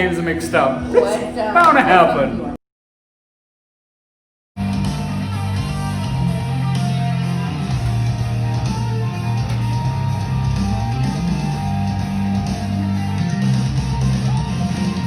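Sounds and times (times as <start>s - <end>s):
guitar-led music with bass: 4.6s - 15.0s.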